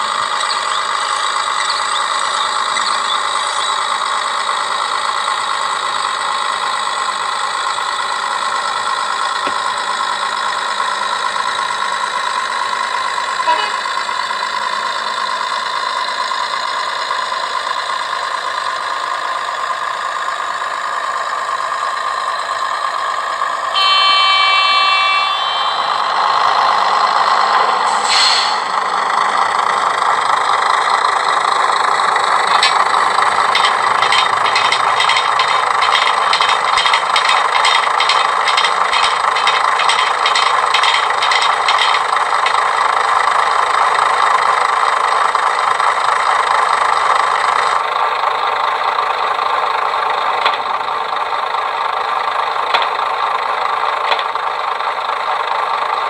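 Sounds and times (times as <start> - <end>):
diesel engine running: 0.0 - 56.0
train horn blast: 13.5 - 14.0, 23.8 - 27.2
air hiss: 27.3 - 29.1
regular clicks: 32.2 - 43.0, 52.7 - 53.1, 54.0 - 54.4.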